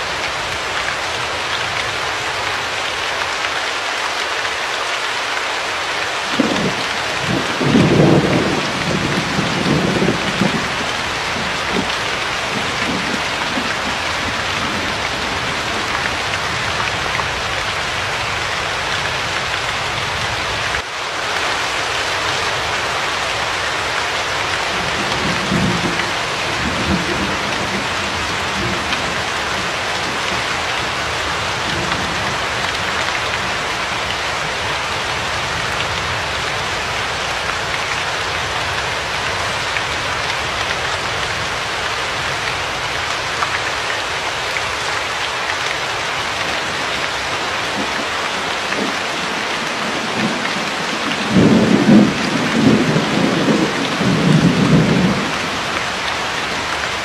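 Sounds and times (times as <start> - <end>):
heavy rainfall: 0.0 - 57.0
rolling thunder: 6.3 - 17.1, 24.6 - 33.5, 48.7 - 55.6.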